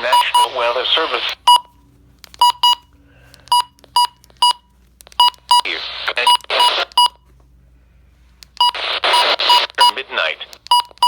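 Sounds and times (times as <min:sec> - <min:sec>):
short electronic beeps: 0:00.0 - 0:00.6
broadcast voice: 0:00.0 - 0:01.4, 0:05.6 - 0:06.9, 0:08.8 - 0:10.6.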